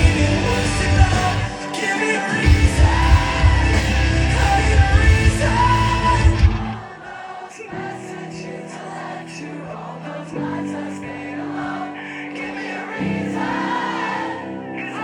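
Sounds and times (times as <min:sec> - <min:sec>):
rock band playing live: 0:00.0 - 0:06.8
person singing: 0:00.0 - 0:15.0.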